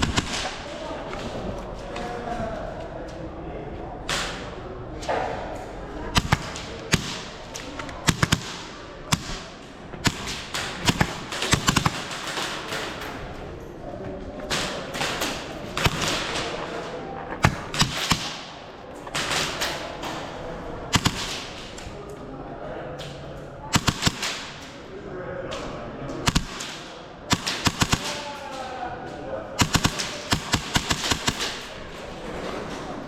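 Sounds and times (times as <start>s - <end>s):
airsoft guns firing: 0.0s - 0.8s, 6.1s - 13.4s, 14.5s - 16.7s, 17.4s - 22.0s, 23.7s - 24.8s, 26.2s - 28.8s, 29.6s - 32.0s.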